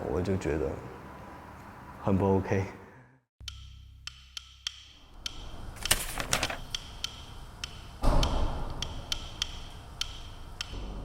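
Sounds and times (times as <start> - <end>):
ticking clock-like percussion: 3.4 - 6.0, 6.6 - 10.9.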